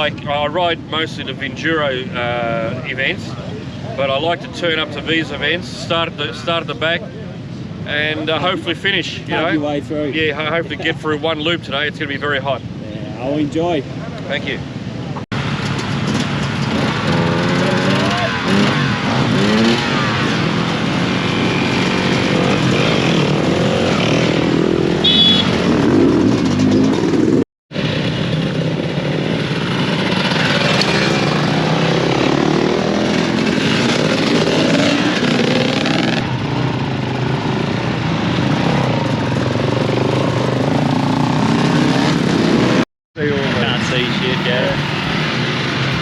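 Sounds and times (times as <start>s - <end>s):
dirt bike engines revving: 15.4s - 46.0s.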